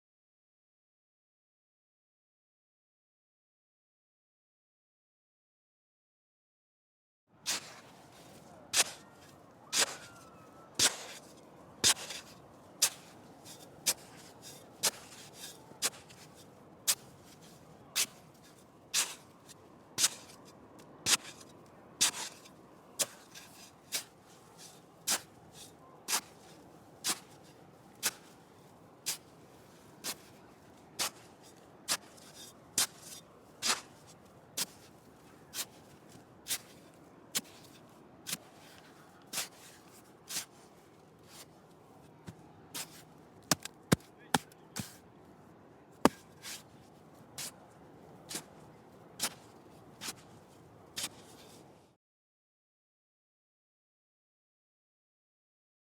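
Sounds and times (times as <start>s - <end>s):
shovel digging into sand: 7.5s - 9.0s, 9.7s - 10.2s, 10.8s - 20.4s, 21.0s - 28.4s, 29.0s - 29.3s, 30.0s - 30.4s, 31.0s - 40.6s, 42.7s - 45.0s, 46.0s - 46.8s, 48.3s - 48.6s, 49.2s - 50.4s, 51.0s - 51.7s.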